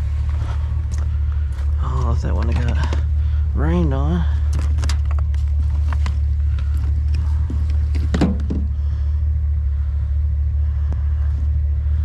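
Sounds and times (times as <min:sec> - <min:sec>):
vehicle engine idling: 0:00.0 - 0:12.0
clicks and knocks of handling: 0:02.0 - 0:03.1, 0:04.5 - 0:08.7.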